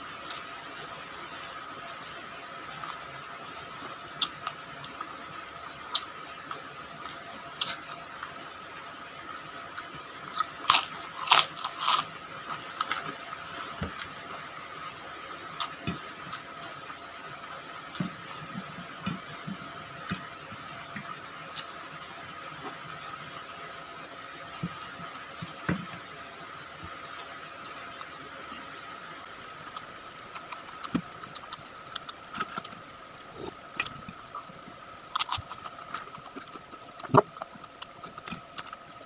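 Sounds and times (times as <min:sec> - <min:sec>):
faint steady hum: 0:00.0 - 0:39.0
person crunching fried food: 0:09.8 - 0:13.1, 0:35.1 - 0:38.8.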